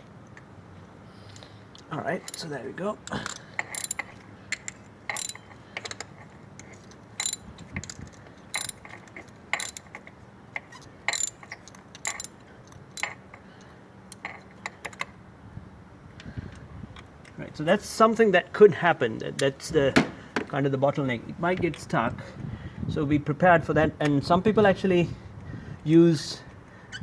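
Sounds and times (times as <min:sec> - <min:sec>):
ratchet wrench clicking: 0:02.2 - 0:02.5, 0:03.1 - 0:06.0, 0:07.2 - 0:10.0, 0:11.1 - 0:12.4, 0:13.0 - 0:13.2.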